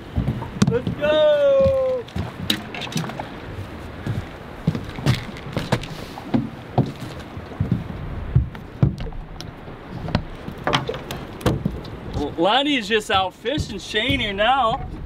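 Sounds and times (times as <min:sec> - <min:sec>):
rushing water: 0:00.0 - 0:15.0
wind: 0:00.0 - 0:15.0
knocks against small boat: 0:07.6 - 0:09.2, 0:10.0 - 0:12.3, 0:13.1 - 0:14.5.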